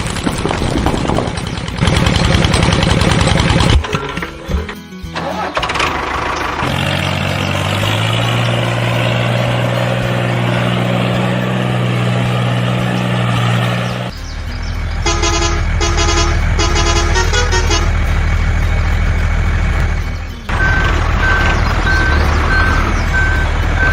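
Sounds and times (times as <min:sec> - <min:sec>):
engine humming: 0:00.0 - 0:23.9
vehicle horn blast: 0:15.0 - 0:18.2
short electronic beeps: 0:20.5 - 0:23.9.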